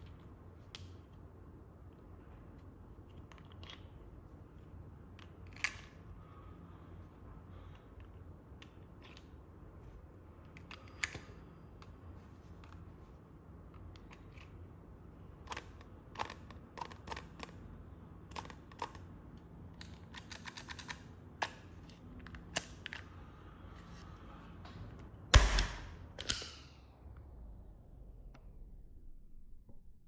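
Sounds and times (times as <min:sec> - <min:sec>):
revolver mechanism clicking: 0:25.3 - 0:26.7
gunshot: 0:25.4 - 0:26.0
weak pop: 0:25.4 - 0:26.0.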